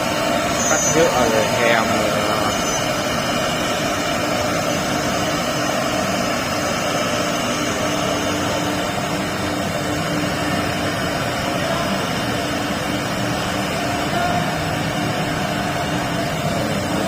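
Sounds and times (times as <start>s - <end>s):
router spindles whining: 0.0s - 9.2s.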